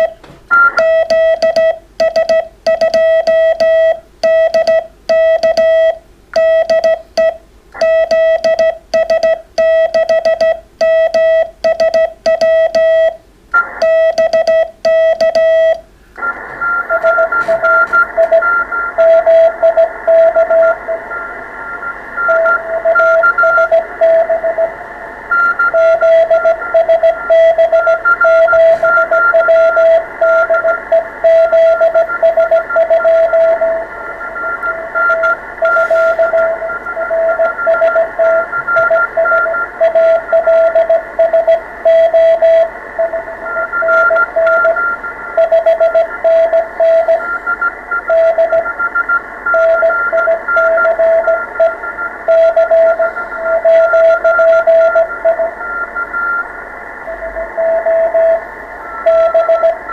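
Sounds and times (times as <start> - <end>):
morse code tone: 0.0 - 24.7, 25.3 - 59.9
incoming morse signals: 0.0 - 59.9
radio band hiss: 13.4 - 13.9, 15.9 - 59.9.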